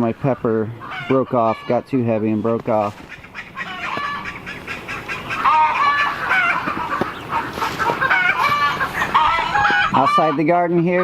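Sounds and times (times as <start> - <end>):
chickens clucking: 0.0 - 11.0
ducks squawking: 0.0 - 11.0.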